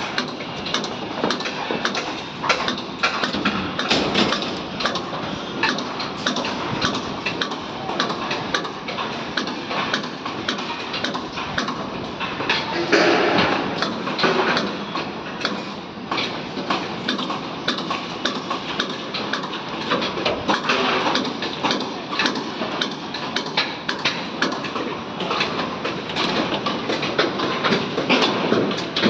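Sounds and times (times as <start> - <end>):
busy construction background: 0.0 - 29.0
metal knocks and clanks: 3.4 - 7.0, 26.1 - 26.7.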